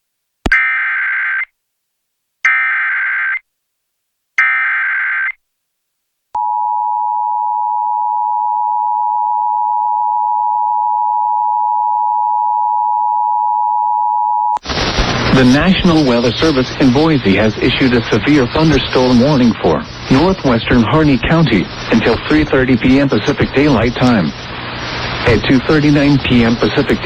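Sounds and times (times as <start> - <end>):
digital data bursts: 14.7 - 27.0.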